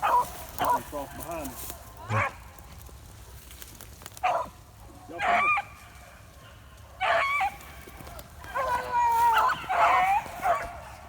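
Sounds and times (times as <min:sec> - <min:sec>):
dogs baying: 0:00.0 - 0:02.5, 0:04.2 - 0:05.8, 0:06.4 - 0:11.0.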